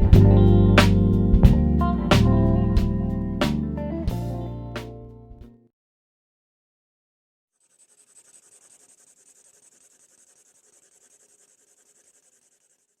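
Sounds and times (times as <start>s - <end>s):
drawing tool scratching on paper: 7.6s - 13.0s.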